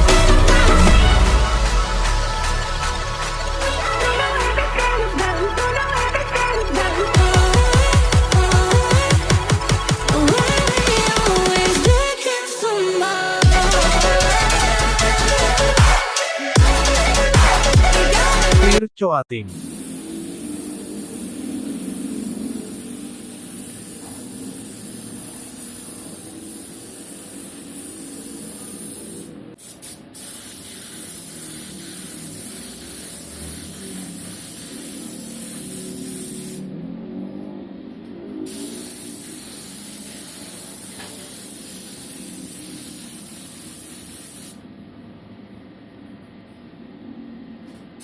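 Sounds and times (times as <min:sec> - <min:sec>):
spray gun hissing: 0:19.5 - 0:36.6, 0:38.5 - 0:44.6.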